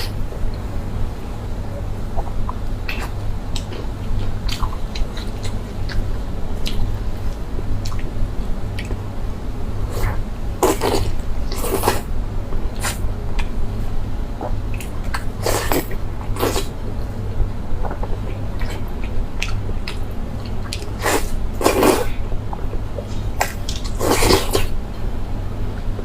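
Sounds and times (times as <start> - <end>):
steady low hum: 0.0 - 26.0
wet chewing: 17.8 - 24.8.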